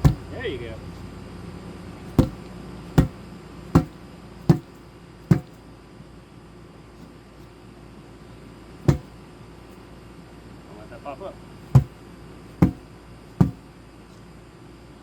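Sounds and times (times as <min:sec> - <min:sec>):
sharp knocks on tire: 0:00.0 - 0:00.4, 0:02.1 - 0:05.6, 0:08.8 - 0:09.2, 0:11.7 - 0:12.0, 0:12.6 - 0:13.6.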